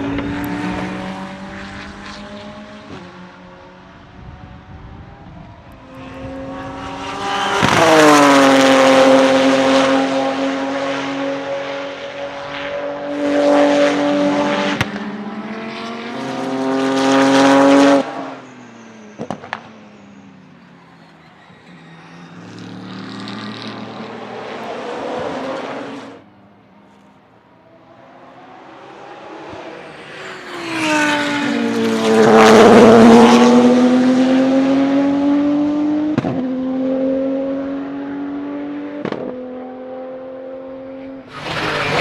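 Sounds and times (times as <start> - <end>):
race car engine at full throttle: 0.0 - 42.0
exhaust pop: 39.0 - 39.4.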